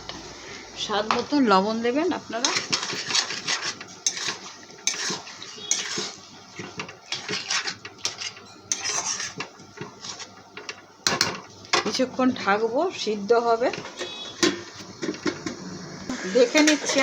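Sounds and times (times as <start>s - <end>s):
spatula scraping a cooking pan: 2.4s - 10.9s, 13.6s - 17.0s.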